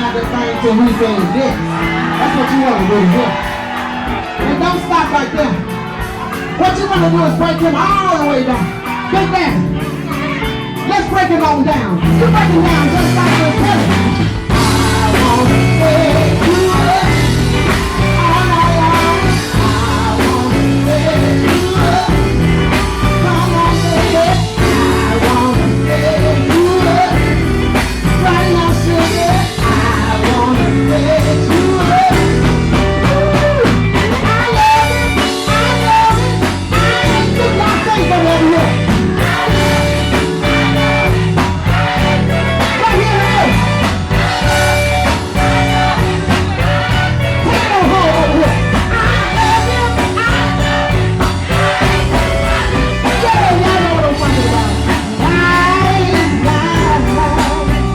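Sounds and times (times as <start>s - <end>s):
bass line: 0.0s - 57.9s
electric guitar: 0.0s - 57.9s
live blues band playing: 0.0s - 57.9s.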